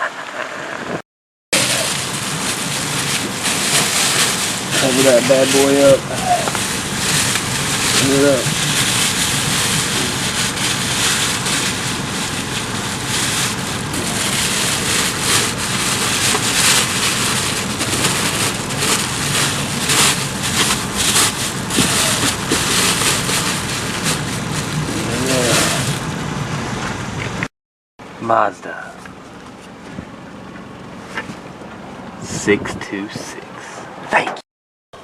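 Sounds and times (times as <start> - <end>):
wind noise on microphone: 0.6 - 1.0, 32.2 - 33.4
car engine running: 1.6 - 27.5, 28.3 - 32.5.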